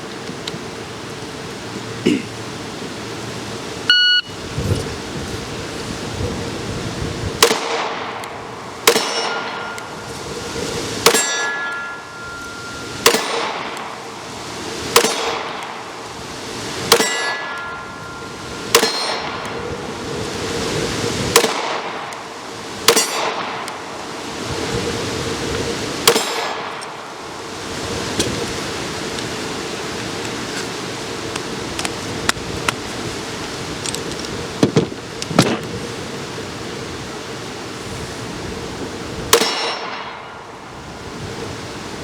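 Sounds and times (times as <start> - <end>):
wind noise on microphone: 2.8 - 8.6, 9.2 - 11.6, 16.1 - 26.6, 27.4 - 42.0
pistol shots: 7.4 - 9.8, 11.0 - 11.7, 13.0 - 13.9, 14.9 - 15.6, 16.9 - 17.7, 18.7 - 19.4, 21.3 - 22.1, 22.9 - 23.6, 26.0 - 26.8, 39.3 - 40.2
steel target clanging: 8.8 - 10.2, 11.0 - 14.0, 16.9 - 19.6, 22.9 - 23.6, 26.1 - 26.8, 39.4 - 40.5.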